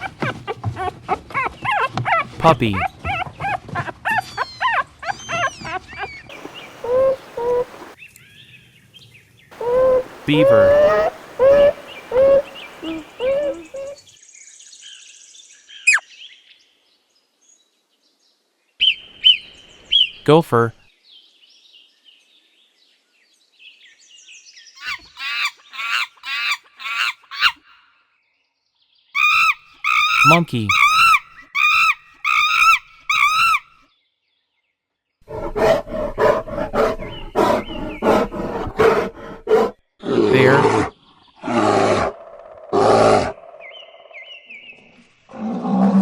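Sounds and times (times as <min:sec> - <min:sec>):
puppy yipping and whimpering: 0:00.0 - 0:06.3
gopher calling: 0:00.0 - 0:08.0, 0:09.5 - 0:14.0, 0:24.8 - 0:27.8, 0:29.2 - 0:33.7.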